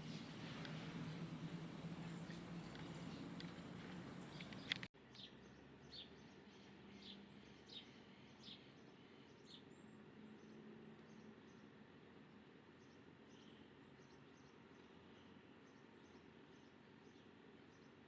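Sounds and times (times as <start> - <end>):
faint small birds chirping: 0.0 - 11.7.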